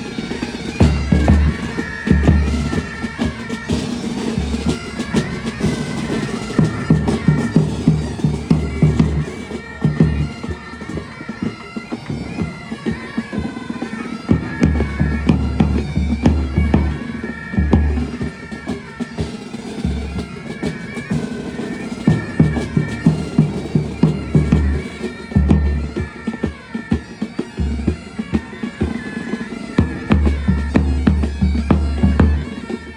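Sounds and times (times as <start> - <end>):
bagpipes playing melody: 0.0 - 32.9
drums striking beat: 0.8 - 9.3, 14.3 - 18.7, 22.1 - 26.4, 27.6 - 32.9.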